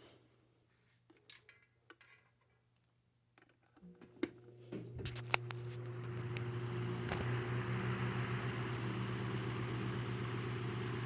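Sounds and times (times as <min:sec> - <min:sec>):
electric fan motor humming: 0:04.2 - 0:11.0.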